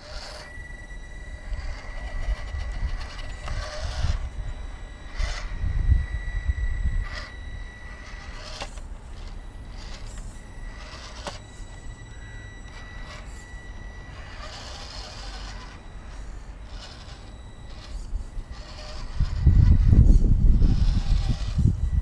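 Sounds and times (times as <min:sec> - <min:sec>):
small electric motor whining: 0:00.0 - 0:22.0
truck scraping over rocks: 0:01.4 - 0:04.3, 0:07.9 - 0:11.7, 0:14.1 - 0:21.7.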